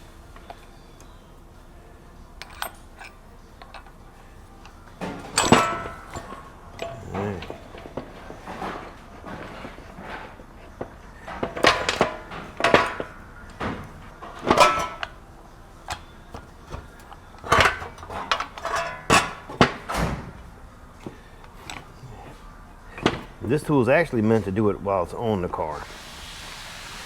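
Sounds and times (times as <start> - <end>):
metal tool parts clanking: 2.4 - 15.2, 15.8 - 20.3, 21.0 - 22.1, 22.9 - 23.4.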